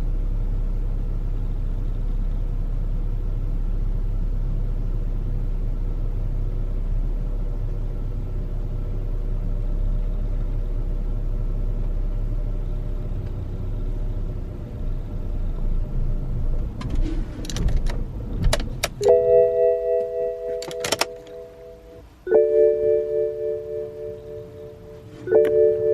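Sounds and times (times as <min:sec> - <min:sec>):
car engine idling: 0:00.0 - 0:25.9
short chime: 0:19.0 - 0:25.9
sharp clicks: 0:20.5 - 0:21.4.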